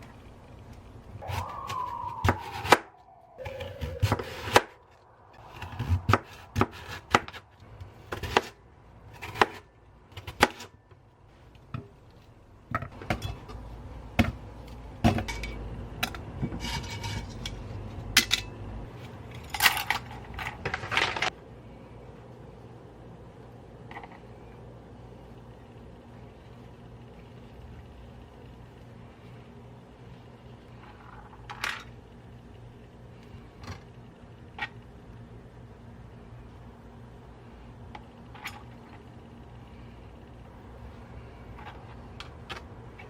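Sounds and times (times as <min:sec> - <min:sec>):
brief falling tone: 0:01.2 - 0:05.3.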